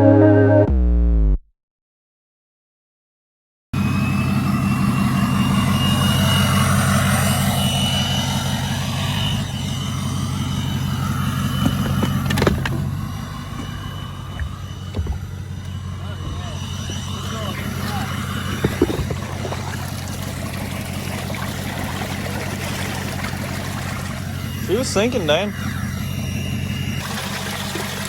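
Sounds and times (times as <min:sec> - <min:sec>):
faint high whine: 0:03.8 - 0:28.0
jet ski engine running: 0:03.8 - 0:28.0
sharp knocks: 0:13.5 - 0:15.6.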